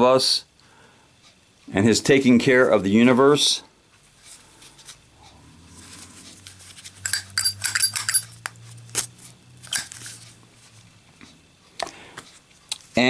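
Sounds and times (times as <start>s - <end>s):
faint low hum: 0.0s - 13.0s
metal lighter case clinking: 6.8s - 10.2s.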